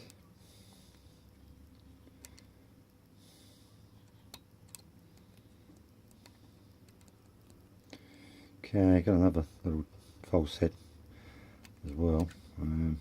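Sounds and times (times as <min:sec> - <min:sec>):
soft breath: 0:00.2 - 0:01.3, 0:02.1 - 0:04.0, 0:07.9 - 0:08.6, 0:09.4 - 0:11.7.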